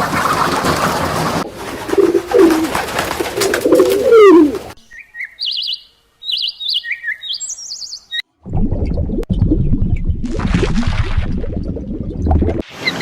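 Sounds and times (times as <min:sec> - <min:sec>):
low cooing bird calls: 0:01.8 - 0:07.4
small bird chirping: 0:04.0 - 0:08.2.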